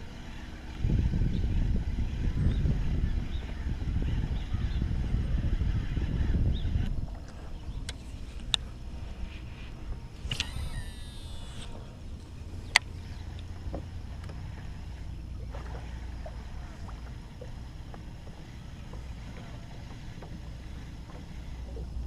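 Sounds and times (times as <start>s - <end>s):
boat equipment humming: 0.0s - 22.0s
faint ticks: 7.2s - 8.7s, 10.3s - 14.8s, 15.5s - 22.0s.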